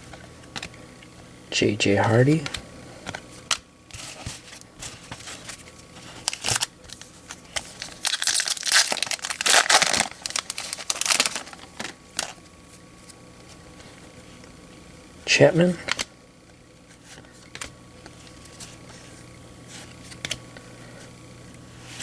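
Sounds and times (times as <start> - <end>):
card pack wrapper crinkling and tearing: 6.1 - 12.5.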